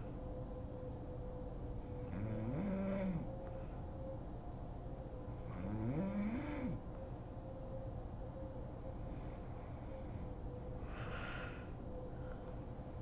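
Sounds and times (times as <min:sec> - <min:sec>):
woman snoring: 0:02.0 - 0:03.3, 0:05.5 - 0:06.8.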